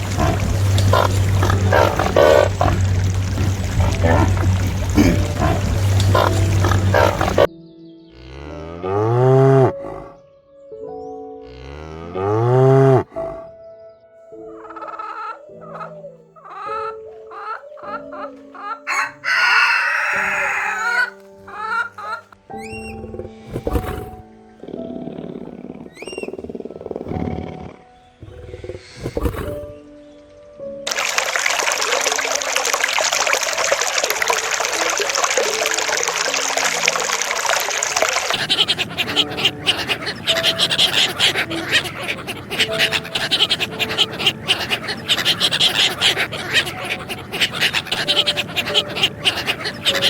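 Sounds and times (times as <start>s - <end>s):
chickens clucking: 0.0s - 7.5s, 14.5s - 22.4s, 37.5s - 50.0s
running water: 0.0s - 7.5s, 30.9s - 50.0s
rooster crowing: 18.8s - 21.2s.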